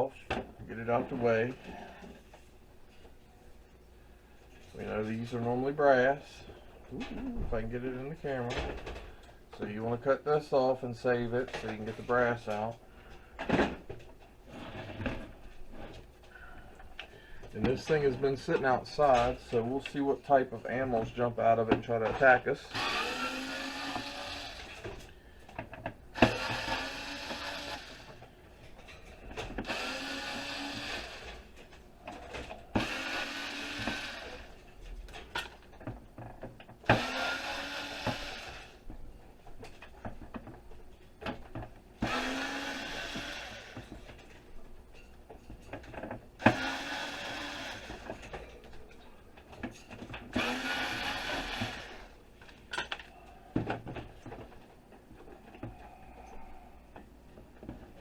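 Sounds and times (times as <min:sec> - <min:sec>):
electric drill whining: 0:22.7 - 0:24.9, 0:26.2 - 0:28.2, 0:29.6 - 0:31.4, 0:32.7 - 0:34.6, 0:36.9 - 0:38.8, 0:42.0 - 0:44.0, 0:46.4 - 0:48.2, 0:50.3 - 0:52.2.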